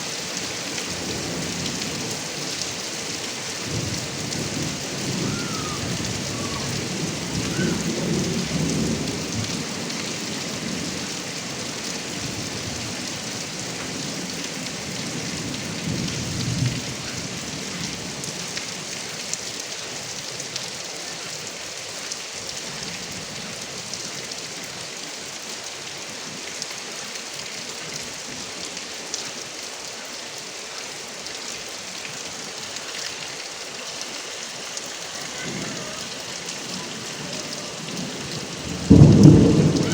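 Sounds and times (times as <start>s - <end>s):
heavy rain: 0.0s - 39.9s
thunder rumbling: 3.7s - 9.9s, 35.3s - 39.9s
thunder clap: 36.6s - 39.9s.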